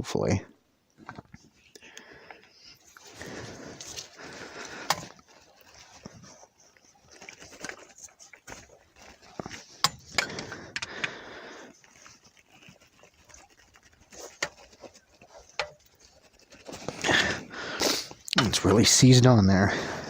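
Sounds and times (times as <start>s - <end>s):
person breathing heavily: 1.7s - 5.2s, 10.0s - 12.0s, 17.0s - 18.2s, 19.6s - 20.0s.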